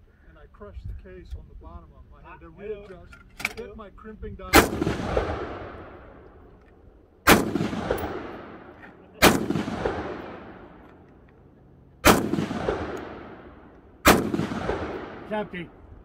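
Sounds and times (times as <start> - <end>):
echoing gunshots: 4.5 - 6.3, 7.2 - 10.9, 12.0 - 16.0.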